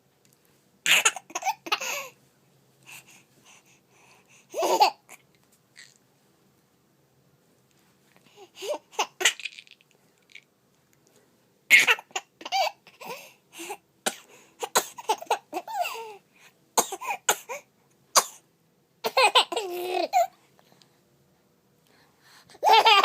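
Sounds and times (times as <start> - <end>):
baby coughing: 0.9 - 2.2, 4.6 - 5.2, 8.6 - 9.6, 11.7 - 13.2, 14.0 - 16.2, 16.8 - 18.4, 19.0 - 20.3, 22.6 - 23.0
baby laughing: 4.5 - 5.2, 8.6 - 9.8, 19.1 - 20.3, 22.6 - 23.0.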